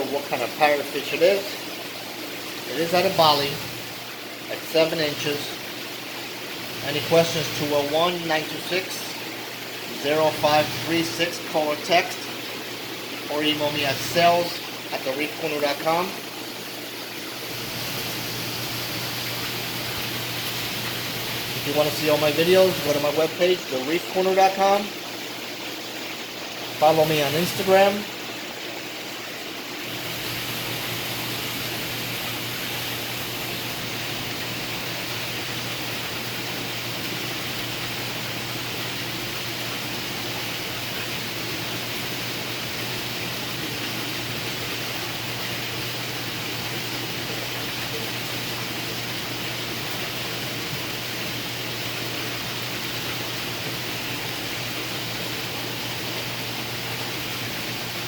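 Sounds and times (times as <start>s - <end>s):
aquarium water hissing: 0.0s - 58.0s.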